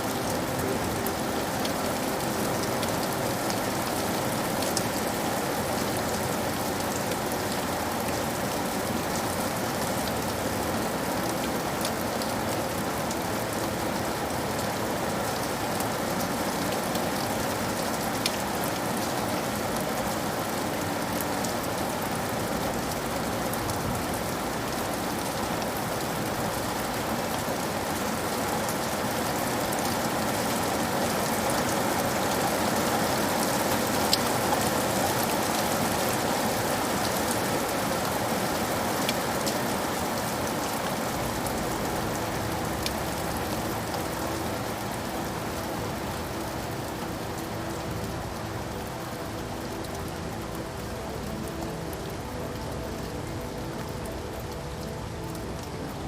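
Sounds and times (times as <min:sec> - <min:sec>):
steady rain hissing: 0:00.0 - 0:56.0.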